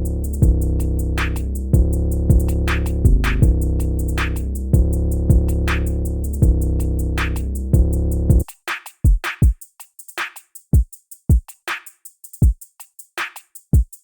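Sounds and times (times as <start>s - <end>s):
distorted bass notes: 0.0s - 8.4s
fast hi-hat ticks: 0.0s - 14.0s.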